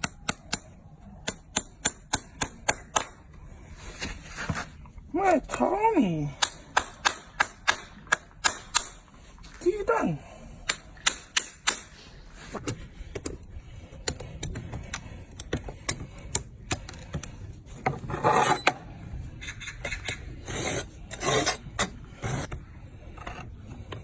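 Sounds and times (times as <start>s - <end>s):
hoof being pared: 11.0s - 24.0s.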